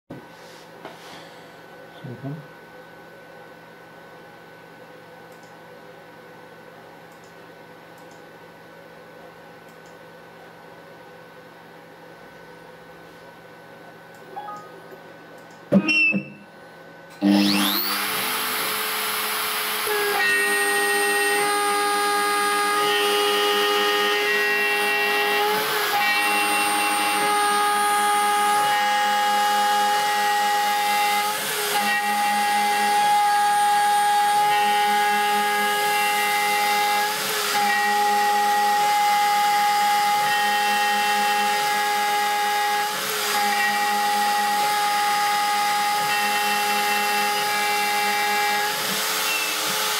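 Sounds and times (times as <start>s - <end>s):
router cutting metal whine: 17.2s - 49.9s.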